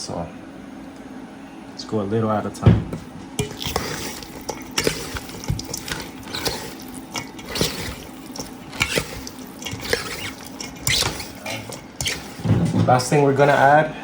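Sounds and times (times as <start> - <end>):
wet squishes of raw fish in bowl: 3.4 - 13.7.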